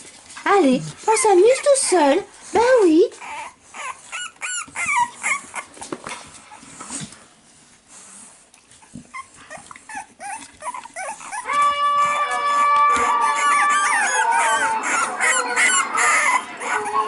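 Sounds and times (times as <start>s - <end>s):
puppies whining and yelping: 1.0s - 1.9s, 3.1s - 6.8s, 8.7s - 17.0s.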